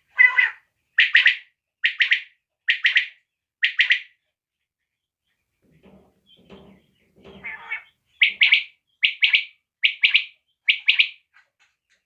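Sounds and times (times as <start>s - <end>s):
quail calling: 0.1s - 4.1s, 7.4s - 11.2s.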